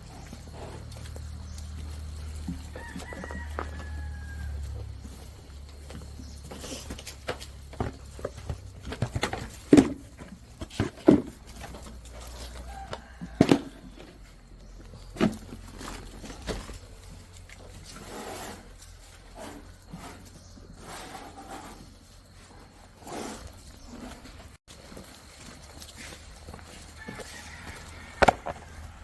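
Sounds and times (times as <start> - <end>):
goats moving about: 0.0 - 29.0
sharp knocks and thumps: 5.8 - 12.1, 12.8 - 14.2, 28.1 - 28.8.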